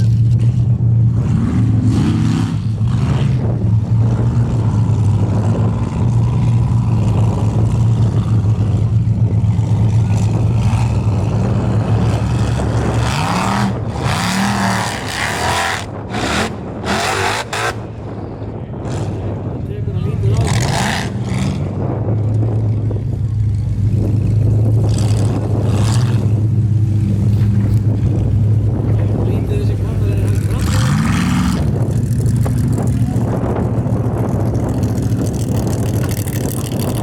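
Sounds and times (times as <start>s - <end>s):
race engine revving: 0.0s - 37.0s.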